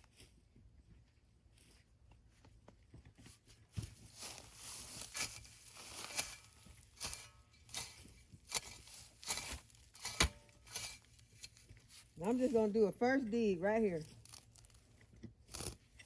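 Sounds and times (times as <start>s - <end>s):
scuffing footsteps: 2.4s - 12.7s.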